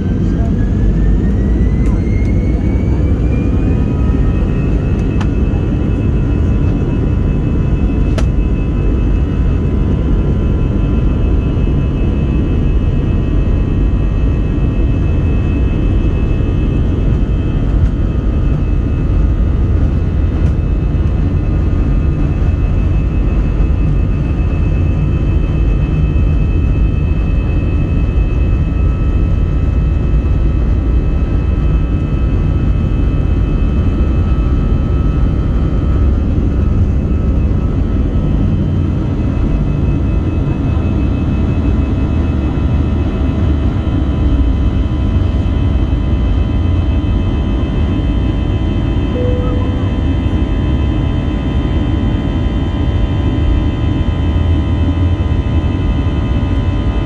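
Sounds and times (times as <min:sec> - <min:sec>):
high whining engine tones: 0:00.0 - 0:30.6, 0:46.3 - 0:53.4
jet engines rumbling in cabin: 0:00.0 - 0:57.0.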